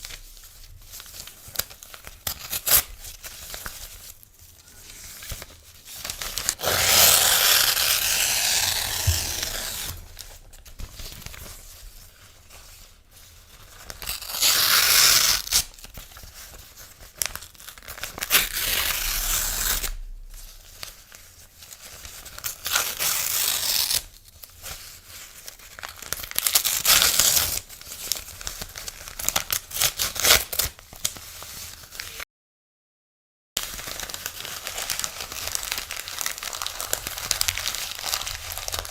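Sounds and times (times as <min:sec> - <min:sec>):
paper rustling and crinkling: 0:00.0 - 0:32.2, 0:33.6 - 0:38.9
paper tearing: 0:06.1 - 0:11.4, 0:13.9 - 0:15.8, 0:17.2 - 0:20.1, 0:22.4 - 0:24.1.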